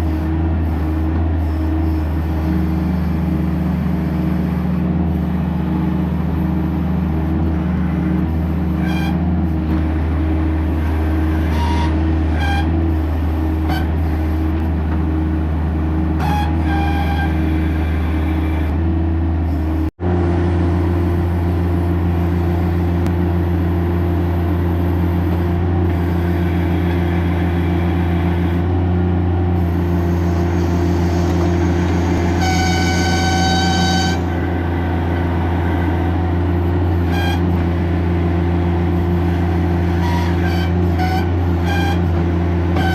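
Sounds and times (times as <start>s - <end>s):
loader engine running: 0.0s - 42.9s
high whine: 29.6s - 42.9s
short high tones: 29.8s - 36.0s.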